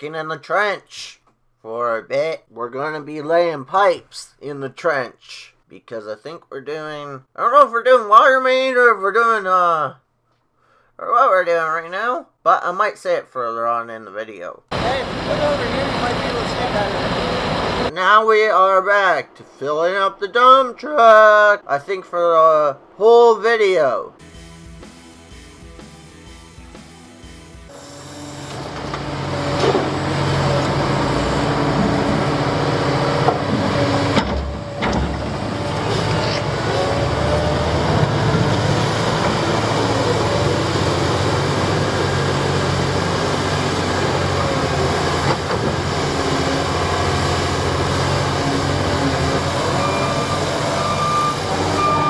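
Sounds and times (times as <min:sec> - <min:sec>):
heavy diesel machinery running: 0:14.7 - 0:17.9, 0:24.2 - 0:52.0
reversing alarm beeping: 0:49.4 - 0:52.0.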